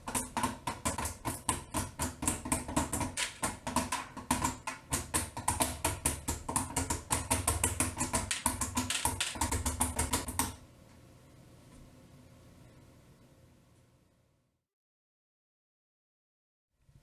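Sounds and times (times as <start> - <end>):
fast typing on mechanical keyboard: 0.0 - 10.6.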